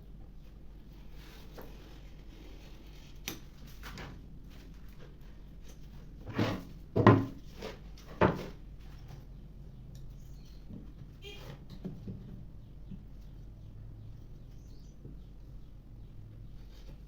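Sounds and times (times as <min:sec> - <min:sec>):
knocks on wooden furniture: 0:07.0 - 0:07.4.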